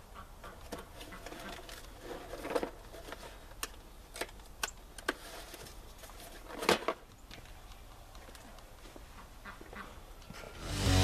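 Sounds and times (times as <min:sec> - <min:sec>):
soft rustle: 0:05.1 - 0:10.5.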